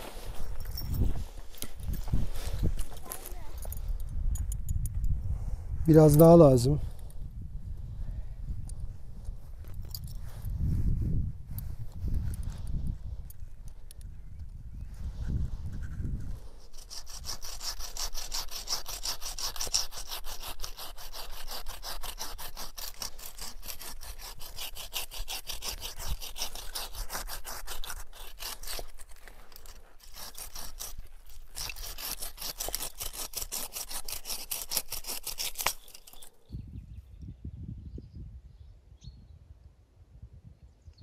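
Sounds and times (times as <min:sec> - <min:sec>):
hand saw cutting wood: 0:16.6 - 0:36.4.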